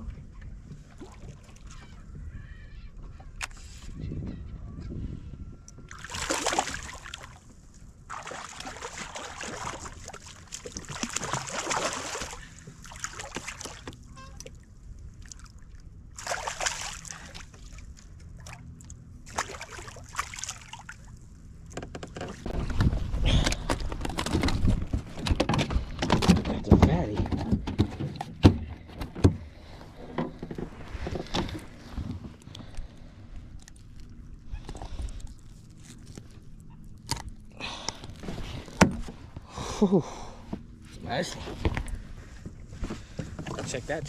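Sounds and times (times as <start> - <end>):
low rumbling: 4.0 - 44.0
fish splashing in water: 5.9 - 7.4, 8.1 - 14.0, 15.2 - 18.6, 19.3 - 21.1.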